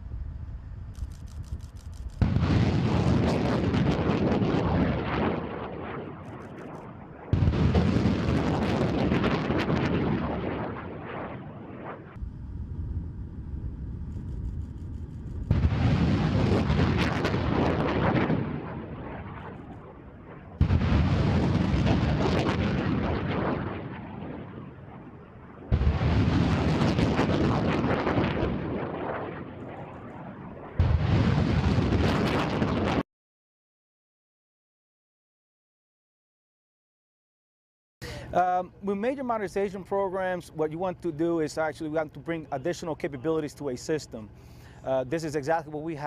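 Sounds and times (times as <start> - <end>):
rocket launch blast: 2.2 - 12.3, 15.5 - 33.0.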